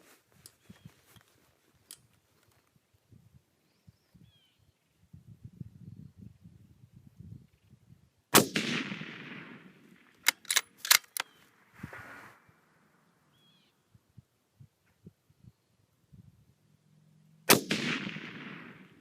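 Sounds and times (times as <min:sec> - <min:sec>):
rifle shot with echo: 0:08.3 - 0:10.7, 0:17.5 - 0:19.0
rifle bolt clicks: 0:10.2 - 0:11.4.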